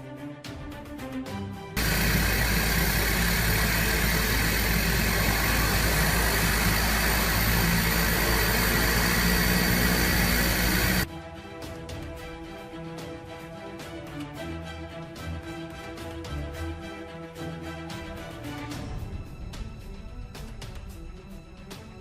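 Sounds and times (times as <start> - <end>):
aircraft engine running: 1.8 - 11.1.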